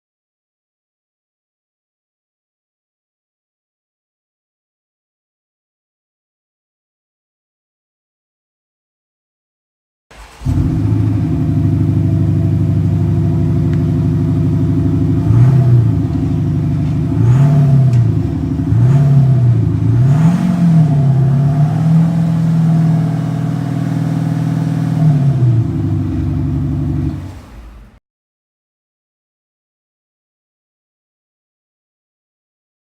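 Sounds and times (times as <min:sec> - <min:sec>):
engine idling and revving: 0:10.1 - 0:28.0.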